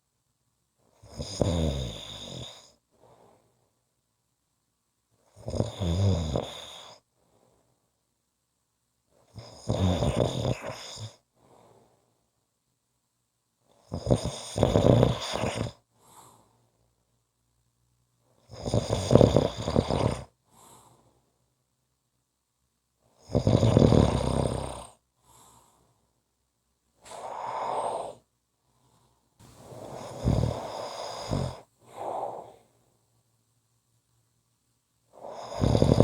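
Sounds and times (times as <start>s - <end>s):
person snoring: 1.0s - 2.7s, 5.4s - 7.0s, 9.4s - 11.2s, 13.9s - 15.8s, 18.5s - 20.3s, 23.2s - 25.0s, 27.0s - 28.3s, 29.6s - 32.6s, 35.1s - 36.0s
soft breaths: 2.6s - 3.8s, 6.9s - 8.0s, 11.2s - 12.4s, 15.2s - 17.2s, 20.3s - 21.6s, 25.0s - 26.3s, 27.0s - 33.2s, 35.1s - 36.0s.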